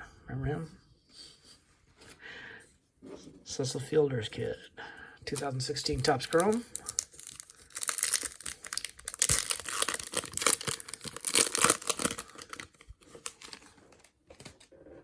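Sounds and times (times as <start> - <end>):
wrapper being torn and crinkled: 5.3 - 14.7.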